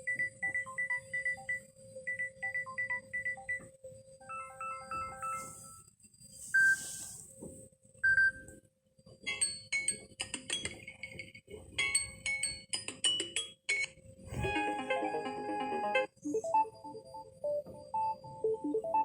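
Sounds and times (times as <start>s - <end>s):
phone ringtone chiming melody: 4.2s - 5.8s, 14.4s - 16.9s.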